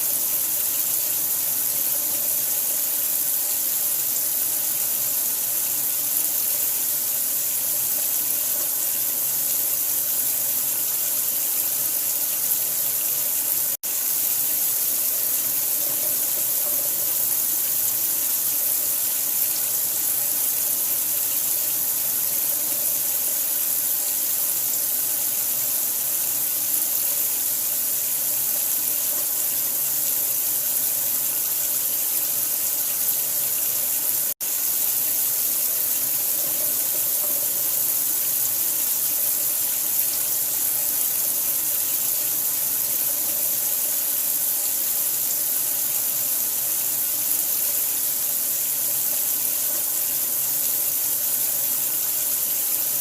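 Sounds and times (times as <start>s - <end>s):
running water: 0.0s - 53.0s.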